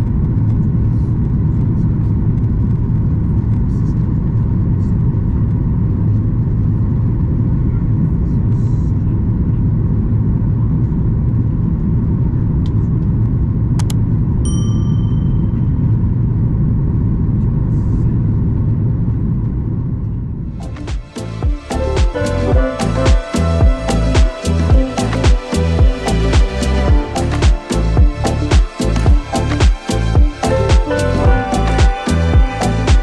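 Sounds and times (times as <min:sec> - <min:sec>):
cabin chime: 0:14.5 - 0:15.8.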